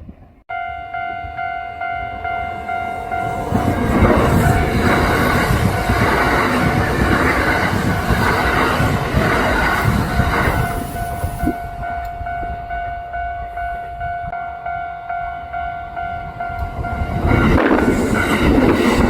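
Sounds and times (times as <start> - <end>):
steady high tone: 0.5 - 19.0
train wheels clattering over rails: 3.3 - 11.5.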